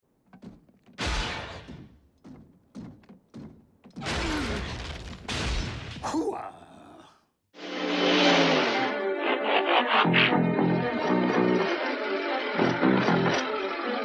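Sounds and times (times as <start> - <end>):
cartoon explosions: 4.0 - 6.2.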